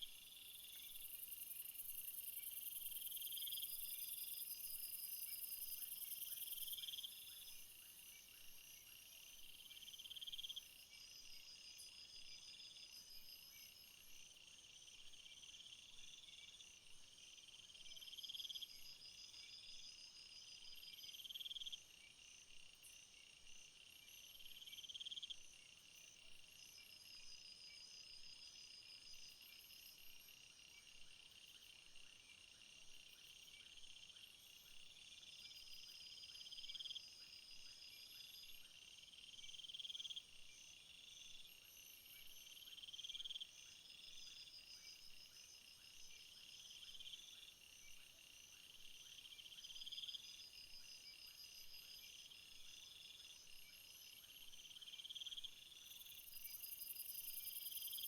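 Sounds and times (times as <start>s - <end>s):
crickets chirring: 0.2s - 7.9s, 39.2s - 58.0s.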